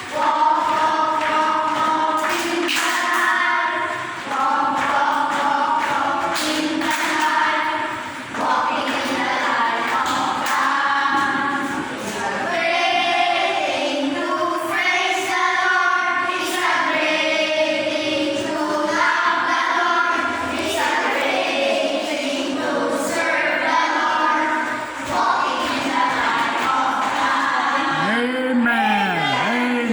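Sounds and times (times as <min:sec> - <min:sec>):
person singing karaoke: 0:27.6 - 0:29.9.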